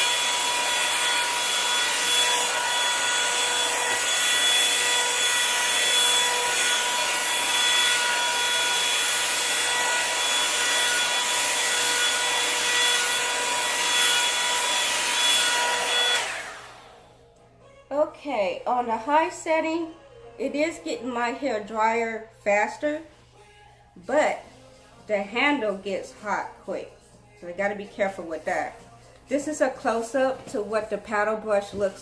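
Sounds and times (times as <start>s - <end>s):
hair dryer running: 0.0s - 17.2s.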